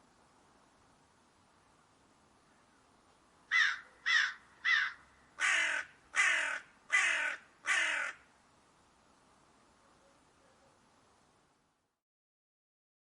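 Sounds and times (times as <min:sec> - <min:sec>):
crow cawing: 0:03.5 - 0:08.3.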